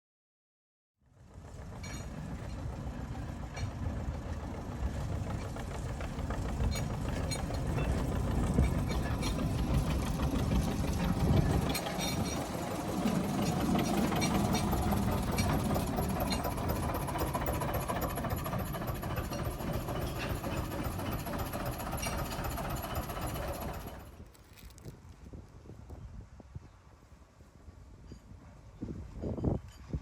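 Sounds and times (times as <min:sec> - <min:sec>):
diesel engine running: 0:01.2 - 0:24.3.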